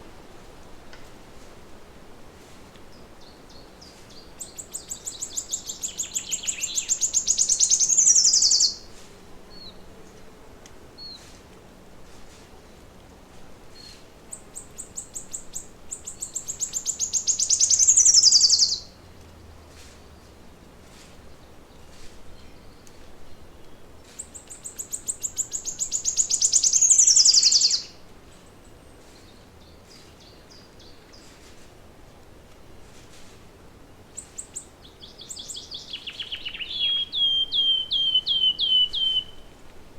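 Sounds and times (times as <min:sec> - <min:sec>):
songbird singing: 0:02.8 - 0:08.9, 0:09.5 - 0:10.2, 0:13.7 - 0:20.6, 0:21.2 - 0:31.5, 0:33.9 - 0:39.9
faint bird chirps: 0:03.5 - 0:08.8, 0:13.8 - 0:18.9, 0:22.4 - 0:28.6, 0:34.2 - 0:39.6.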